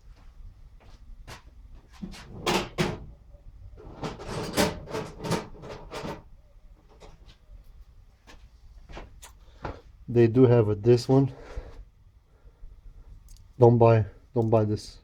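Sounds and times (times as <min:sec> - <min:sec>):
tools clattering: 0:03.8 - 0:06.2.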